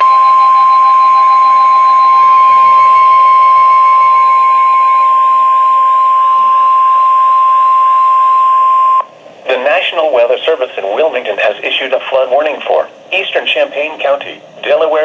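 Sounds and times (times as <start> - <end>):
faint wavering tones: 0.0 - 9.0
steady warning alarm beep: 0.0 - 9.1.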